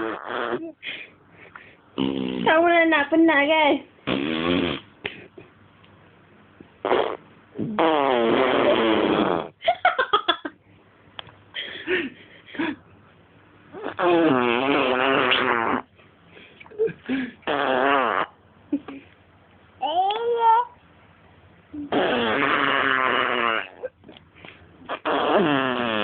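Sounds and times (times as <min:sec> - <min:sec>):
baby blowing raspberries: 0:00.0 - 0:00.7, 0:02.0 - 0:02.5, 0:04.1 - 0:04.9, 0:06.8 - 0:09.6, 0:13.8 - 0:15.9, 0:17.4 - 0:18.4, 0:21.8 - 0:23.8, 0:24.8 - 0:26.0.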